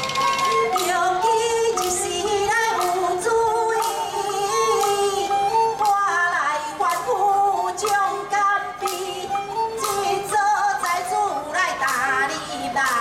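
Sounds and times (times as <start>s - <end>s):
sharp percussive strikes: 0.0s - 6.1s
band accompaniment: 0.0s - 13.0s
woman singing: 0.5s - 13.0s.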